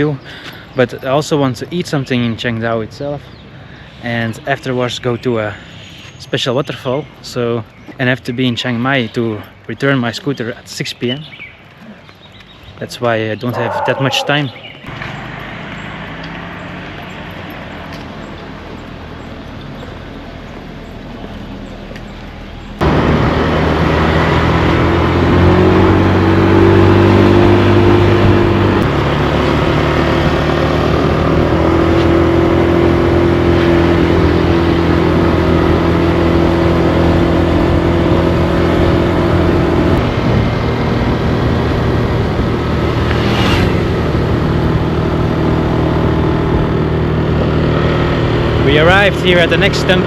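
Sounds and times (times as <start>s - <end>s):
motor scooter engine running: 13.7s - 50.0s
loud rushing noise: 40.0s - 45.1s.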